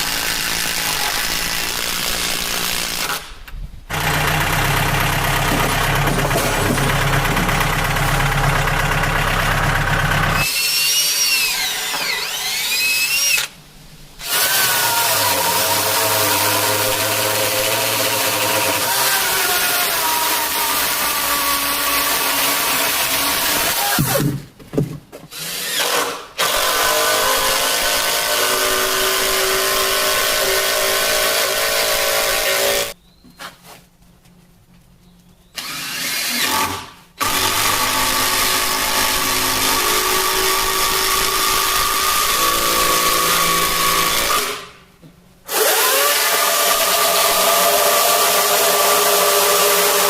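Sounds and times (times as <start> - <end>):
power tool running: 3.9 - 13.5, 35.6 - 44.7, 45.5 - 50.0.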